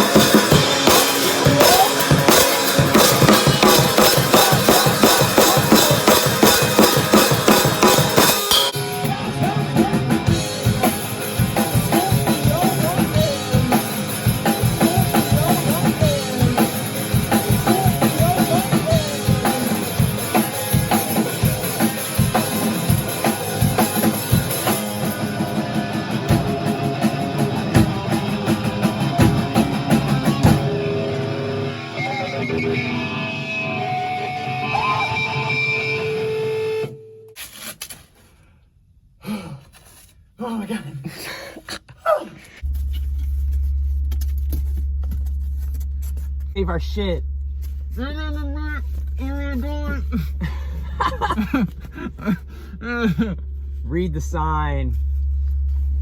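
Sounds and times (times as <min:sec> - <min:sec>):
drum kit: 0:00.0 - 0:36.9
rock music with guitar: 0:00.0 - 0:37.0.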